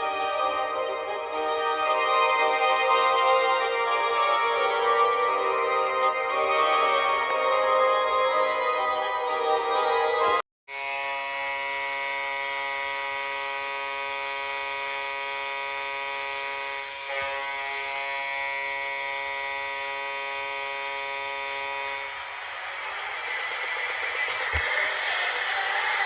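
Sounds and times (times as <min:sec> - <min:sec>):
arena goal horn blast: 0:10.7 - 0:22.2.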